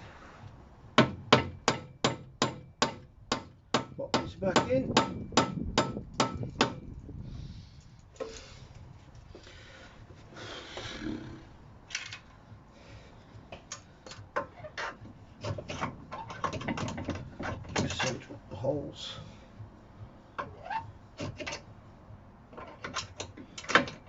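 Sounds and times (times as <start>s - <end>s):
parts clicking and knocking: 11.9s - 12.4s, 13.5s - 18.3s, 20.4s - 21.7s, 22.5s - 24.0s
parts rattling: 13.6s - 18.4s.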